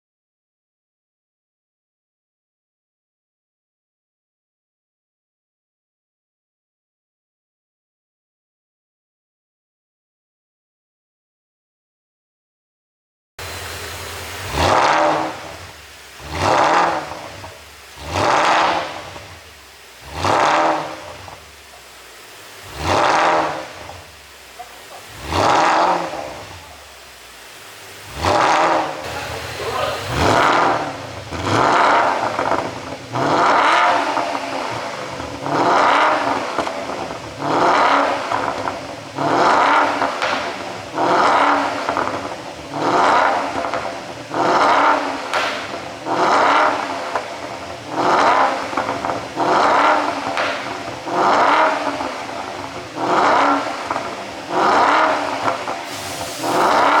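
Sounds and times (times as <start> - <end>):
car engine revving: 13.4 - 57.0
exhaust crackling pops: 13.4 - 57.0.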